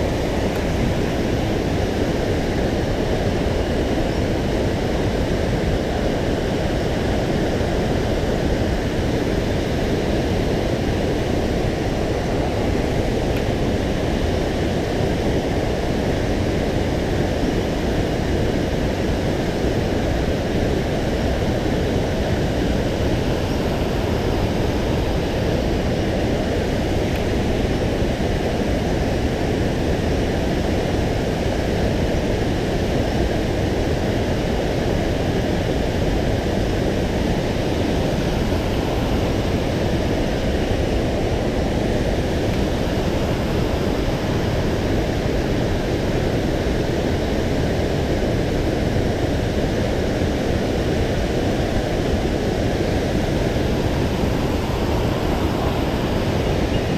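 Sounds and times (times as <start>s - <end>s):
water rushing over rocks: 19.7s - 56.9s.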